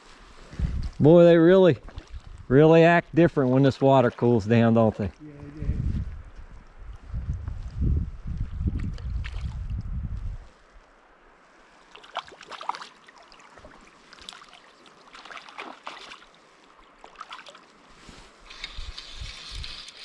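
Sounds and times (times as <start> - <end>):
wind rumble on microphone: 0.3 - 1.1, 1.8 - 2.6, 5.2 - 10.8, 18.5 - 20.0
stream water running: 0.9 - 5.6, 10.6 - 20.0
water splashes: 1.5 - 5.6, 8.6 - 9.8, 11.7 - 17.9.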